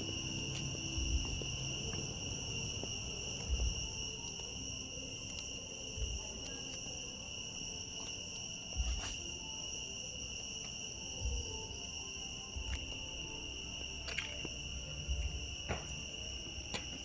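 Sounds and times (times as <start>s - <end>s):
insects chirring: 0.0s - 17.0s
soft low thumps: 0.8s - 4.1s.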